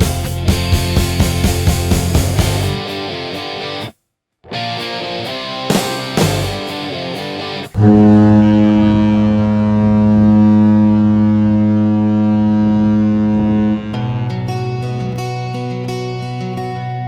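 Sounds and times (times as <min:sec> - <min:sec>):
ship's horn blast: 0:07.8 - 0:15.1.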